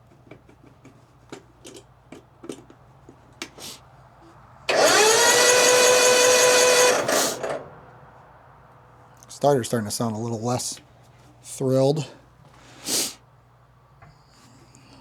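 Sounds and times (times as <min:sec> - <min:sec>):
electric starter cranking engine: 0:04.7 - 0:07.8.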